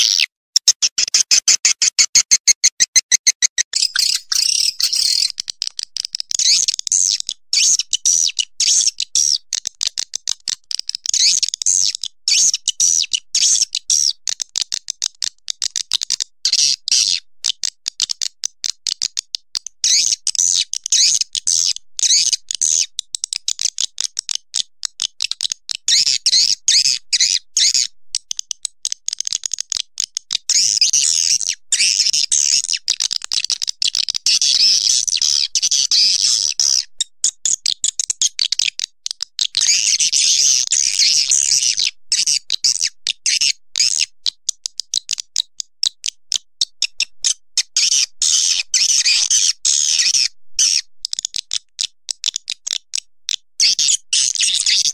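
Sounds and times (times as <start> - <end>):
swiftlet calls chattering: 0.0 - 5.8.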